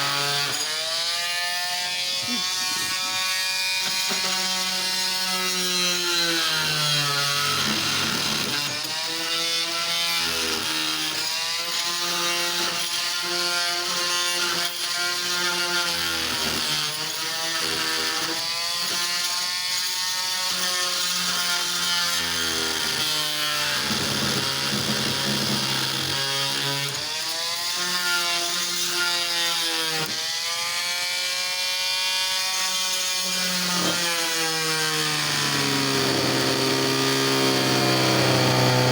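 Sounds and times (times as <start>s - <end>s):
oscillating multi-tool cutting wood: 0.0s - 38.9s.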